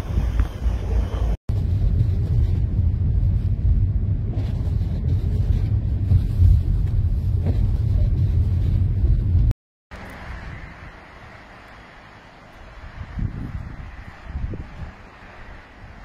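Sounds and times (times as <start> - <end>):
wind buffeting microphone: 0.0 - 11.6, 12.6 - 16.0
quiet windy hiss: 10.0 - 16.0.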